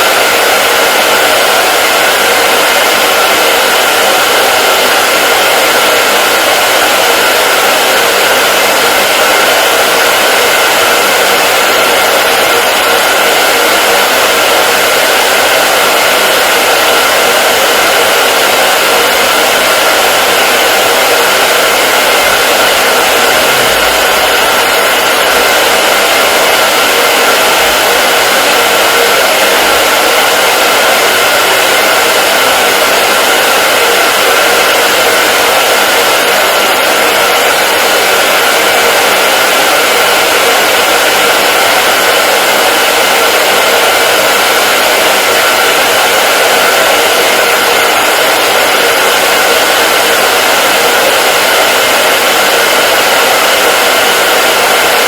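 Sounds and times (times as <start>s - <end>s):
hair dryer running: 0.0s - 55.0s.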